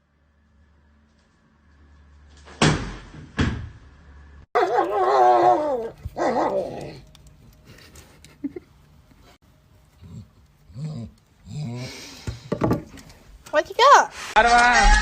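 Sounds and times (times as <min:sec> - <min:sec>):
dog barking: 0:04.6 - 0:05.4.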